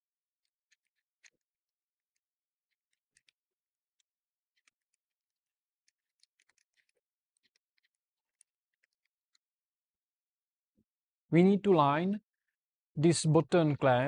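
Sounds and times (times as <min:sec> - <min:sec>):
faint light clicks and ticks: 0:00.4 - 0:09.5.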